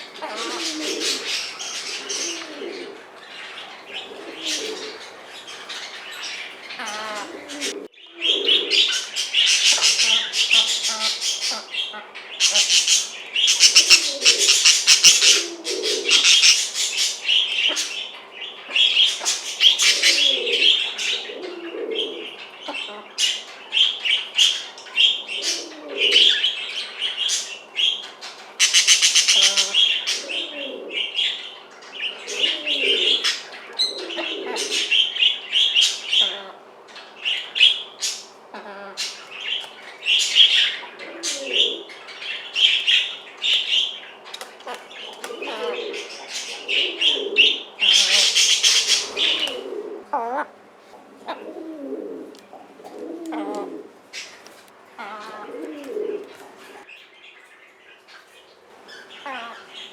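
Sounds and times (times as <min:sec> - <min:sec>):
chicken low wavering calls: 0:00.0 - 0:05.5, 0:06.4 - 0:12.7, 0:13.6 - 0:16.6, 0:29.2 - 0:31.2, 0:32.2 - 0:35.1, 0:44.7 - 0:54.0, 0:54.9 - 0:56.9
budgerigars chattering and chirping: 0:00.0 - 0:50.5, 0:53.3 - 0:59.9.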